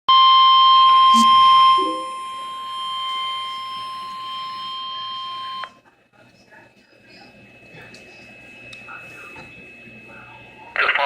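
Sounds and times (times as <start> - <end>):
electronic alarm tone: 0.1 - 5.7.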